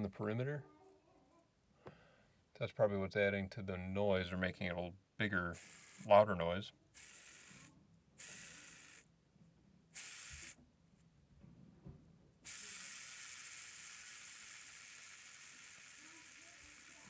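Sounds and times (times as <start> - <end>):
fidget spinner whirring: 5.6 - 6.2, 6.9 - 9.1, 9.9 - 10.6, 12.4 - 17.0
ball bearings rolling: 5.6 - 6.3, 7.0 - 9.1, 10.0 - 10.6, 12.4 - 17.0.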